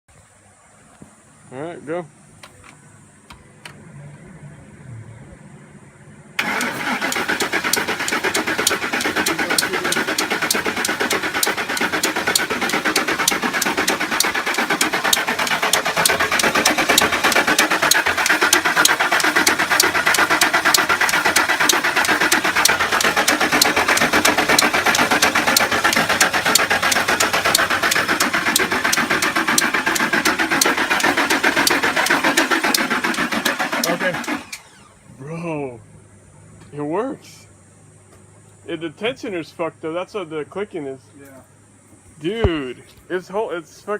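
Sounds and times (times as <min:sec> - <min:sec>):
engine cranking on starter: 0:06.4 - 0:35.1
timing chain clicking and slapping: 0:07.7 - 0:34.4.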